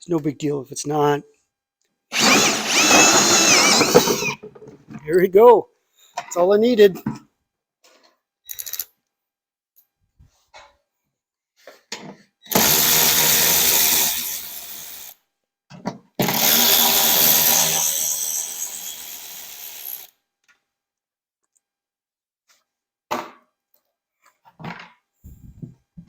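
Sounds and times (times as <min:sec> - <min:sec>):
drill cutting plastic: 0:02.1 - 0:04.4, 0:12.5 - 0:15.2, 0:16.2 - 0:20.1.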